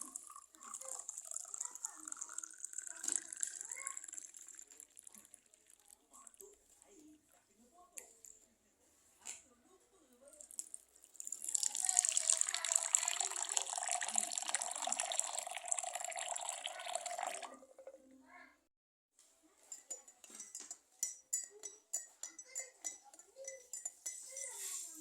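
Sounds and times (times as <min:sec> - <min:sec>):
water pouring: 0:00.0 - 0:06.6, 0:10.4 - 0:18.0
light clinks and taps: 0:19.6 - 0:24.8.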